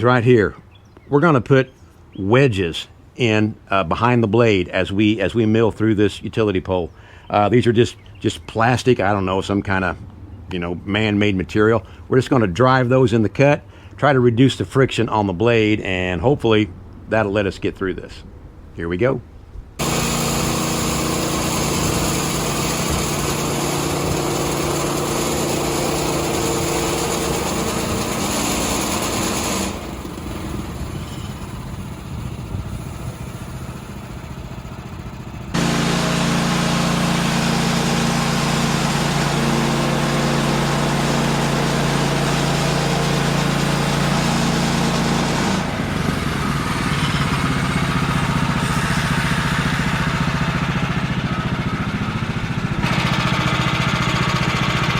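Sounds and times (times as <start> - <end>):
bandsaw sawmill cutting wood: 19.8 - 54.9.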